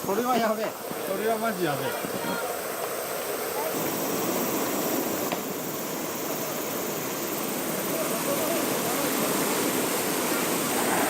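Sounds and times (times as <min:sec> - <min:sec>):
faint voices: 0:00.0 - 0:04.4, 0:07.5 - 0:11.0
stream water rushing: 0:00.0 - 0:11.0.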